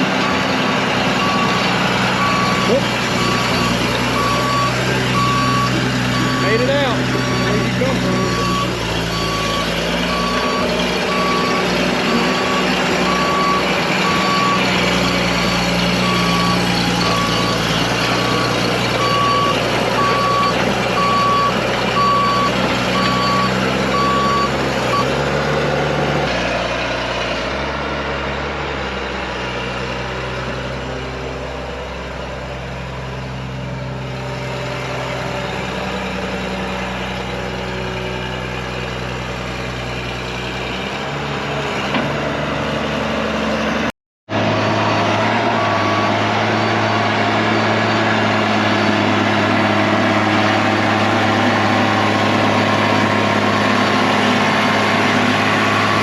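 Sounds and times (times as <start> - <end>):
excavator diesel engine running: 0.0 - 56.0
reversing alarm beeping: 0.2 - 0.5, 1.1 - 25.1, 45.5 - 46.7, 51.6 - 54.3, 55.4 - 56.0.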